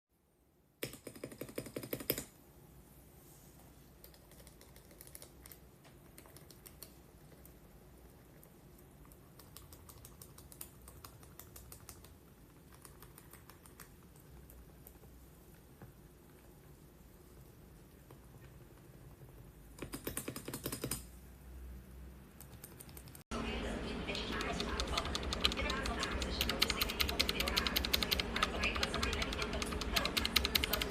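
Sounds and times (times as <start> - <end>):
typing on mechanical keyboard: 0.8 - 2.4, 4.0 - 7.6, 9.0 - 15.1, 19.8 - 21.1, 22.4 - 23.2, 24.1 - 30.9.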